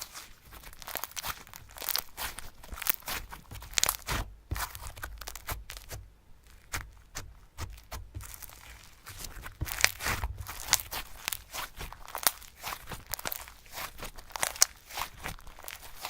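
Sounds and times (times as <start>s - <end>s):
slime sticky clicks and crackles: 8.2s - 16.0s.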